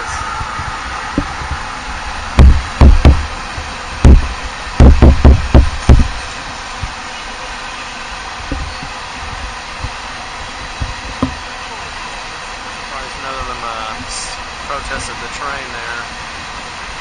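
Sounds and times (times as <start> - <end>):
freight train rumbling past: 0.0 - 17.0
loud low knocks: 0.3 - 7.0, 8.4 - 10.0, 10.6 - 11.5.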